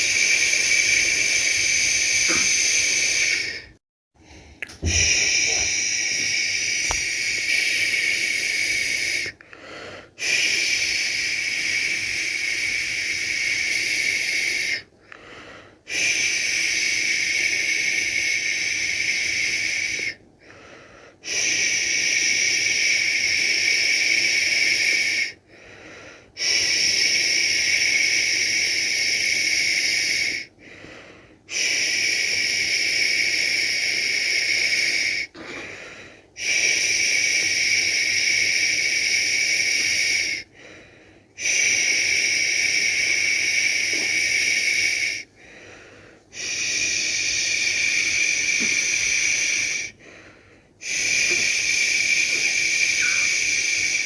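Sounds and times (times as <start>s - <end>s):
person shushing: 4.6s - 8.6s, 50.9s - 54.0s.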